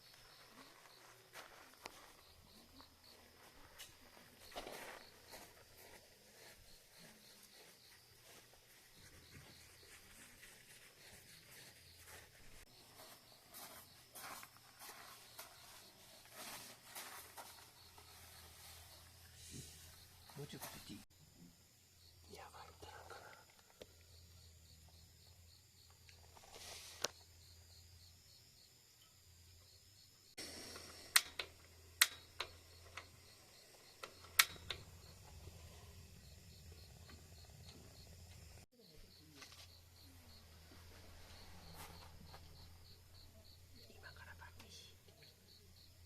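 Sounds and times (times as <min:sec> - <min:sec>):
campfire crackling and hissing: 0:30.3 - 0:38.7.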